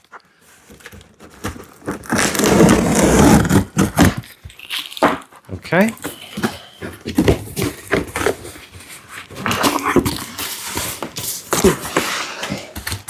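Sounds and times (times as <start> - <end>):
cardboard box rustling: 6.0 - 13.0.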